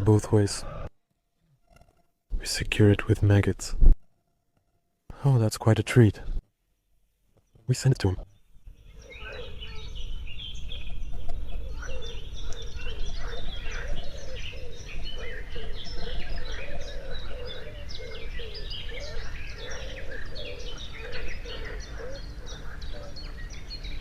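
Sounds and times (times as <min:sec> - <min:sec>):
birds chirping chorus: 0:00.0 - 0:00.9, 0:04.6 - 0:24.0
lower bird call: 0:08.2 - 0:24.0.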